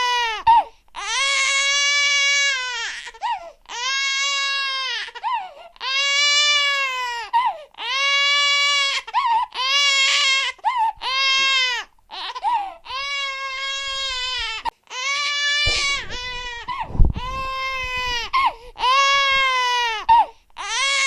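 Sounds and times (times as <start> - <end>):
infant crying: 0.0 - 15.3
low thump: 15.7 - 18.3.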